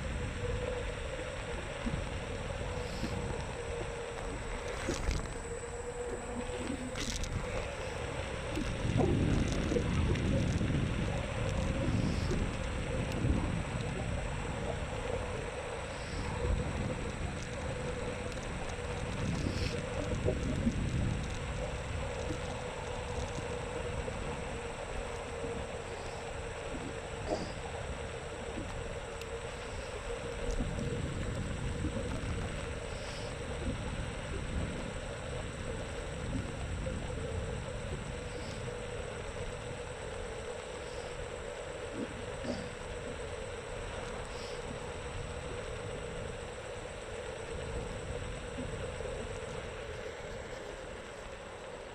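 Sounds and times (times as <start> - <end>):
wind buffeting microphone: 0.0 - 50.7
electric scooter hum: 0.0 - 51.9
thin steady whine: 0.0 - 51.9
uneven low rumble: 0.0 - 51.9.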